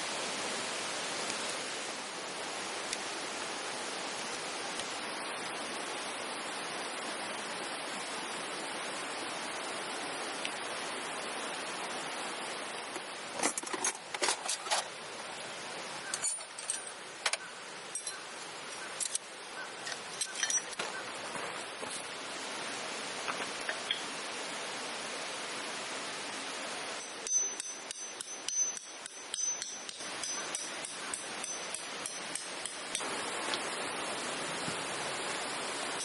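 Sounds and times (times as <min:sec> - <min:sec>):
metal camping gear clinking: 0:13.3 - 0:14.9, 0:16.1 - 0:18.2, 0:19.0 - 0:21.0, 0:27.0 - 0:33.0.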